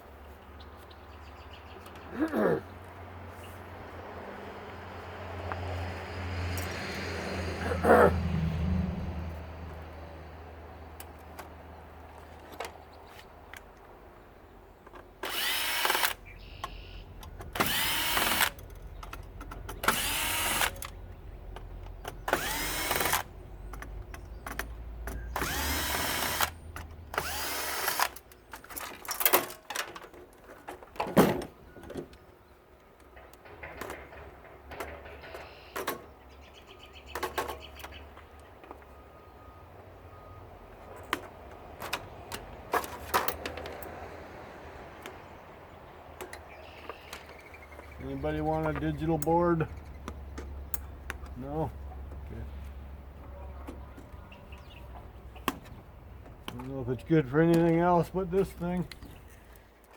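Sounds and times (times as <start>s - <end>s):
power drill spinning: 15.2s - 16.2s, 17.6s - 18.6s, 19.8s - 20.9s, 22.3s - 23.3s, 25.4s - 28.2s
knocks and clicks of parts: 17.2s - 32.2s, 32.9s - 36.1s.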